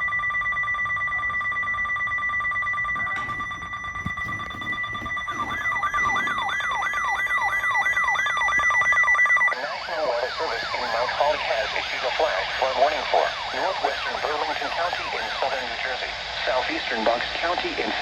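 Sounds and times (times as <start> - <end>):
siren-like sweep: 0.0 - 16.0
steady high alert tones: 2.7 - 15.4.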